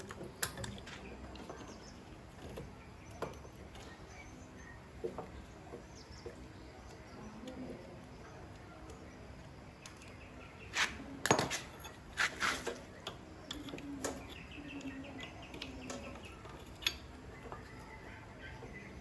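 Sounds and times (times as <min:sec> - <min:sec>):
metal tools clinking and knocking: 0:10.8 - 0:17.9.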